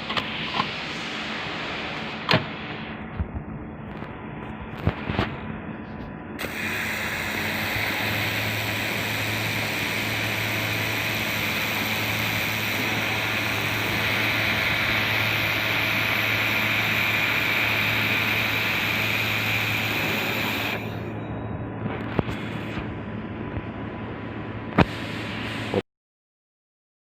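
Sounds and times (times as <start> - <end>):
low hum: 0.0 - 25.8
laser welder hissing: 6.4 - 21.1, 24.8 - 25.8.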